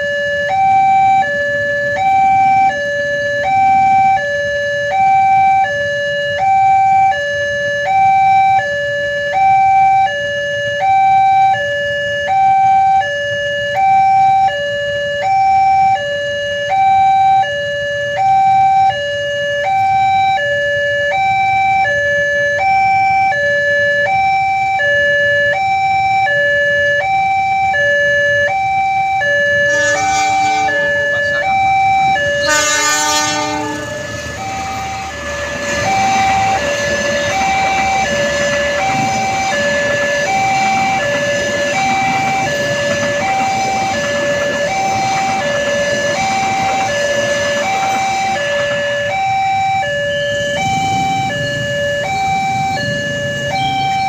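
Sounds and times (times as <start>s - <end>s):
level crossing two-tone alarm: 0.0s - 54.0s.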